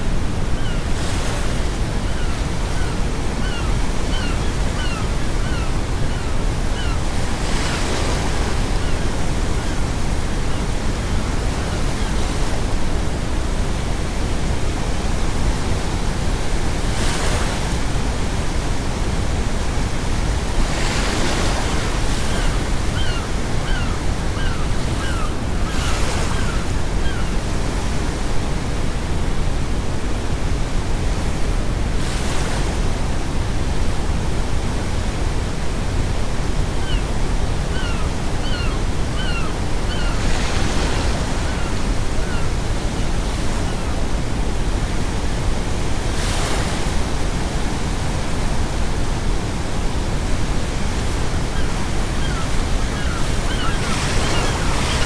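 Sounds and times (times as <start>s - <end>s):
gulls calling: 2.2s - 9.6s, 20.5s - 27.5s, 37.6s - 44.0s, 51.4s - 55.0s
sea waves breaking: 16.7s - 28.0s, 39.1s - 44.4s, 51.6s - 55.0s.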